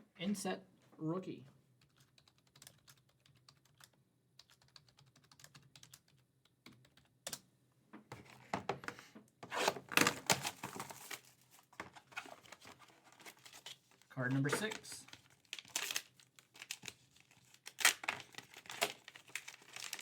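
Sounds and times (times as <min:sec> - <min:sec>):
rustling handling noise: 0:08.1 - 0:20.0.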